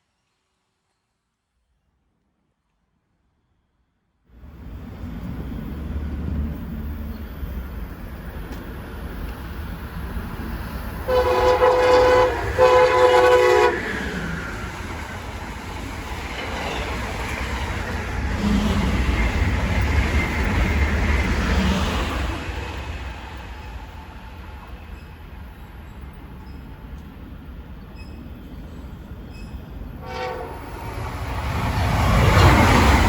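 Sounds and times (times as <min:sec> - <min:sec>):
train rumbling past: 0:04.3 - 0:33.0
train horn blasts: 0:11.1 - 0:14.0, 0:30.0 - 0:31.0.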